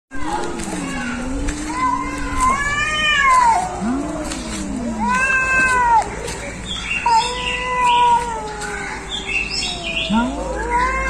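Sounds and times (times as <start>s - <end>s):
cat growling: 0.2s - 6.1s, 9.7s - 11.0s
cat yowling: 0.2s - 6.2s, 7.0s - 11.0s.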